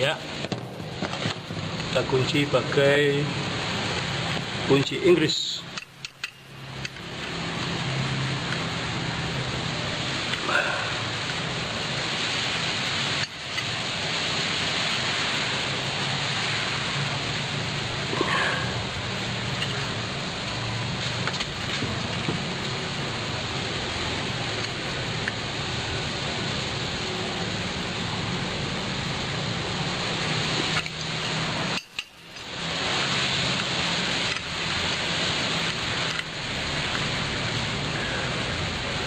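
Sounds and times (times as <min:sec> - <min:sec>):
steady hiss: 0:00.0 - 0:39.0
wrench clinking on metal bolts: 0:05.7 - 0:07.0, 0:30.8 - 0:32.5.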